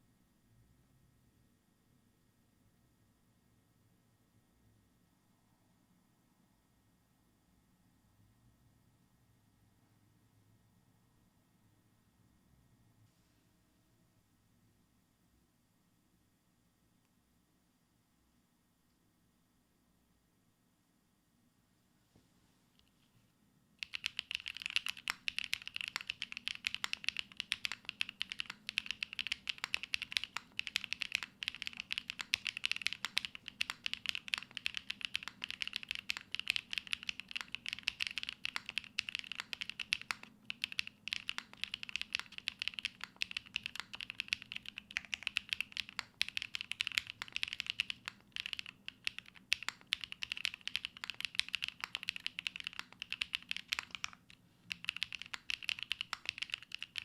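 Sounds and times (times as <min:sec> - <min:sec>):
fast typing on mechanical keyboard: 0:23.8 - 0:57.0.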